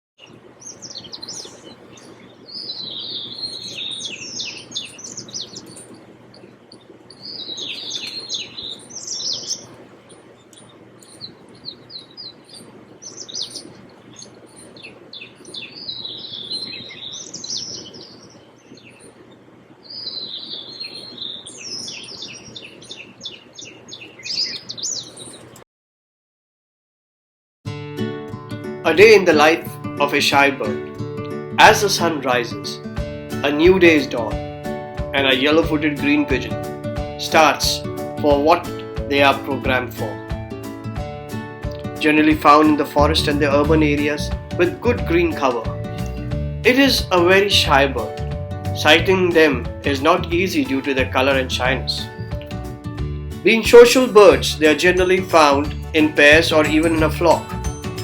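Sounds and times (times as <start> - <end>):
birds chirping and singing: 0.2 - 25.6, 28.9 - 58.0
faint steady background noise: 0.2 - 25.6.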